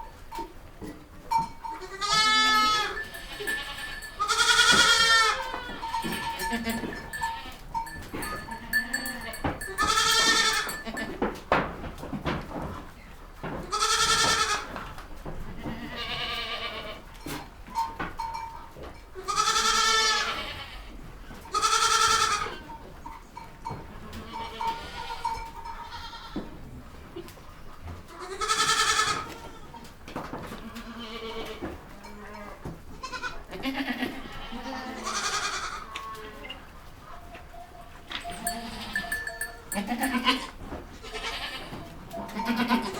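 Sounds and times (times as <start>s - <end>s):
goats bleating: 1.6s - 11.2s, 13.6s - 14.8s, 15.6s - 17.1s, 19.2s - 22.8s, 23.8s - 26.5s, 28.1s - 29.8s, 30.6s - 36.6s, 38.1s - 42.9s.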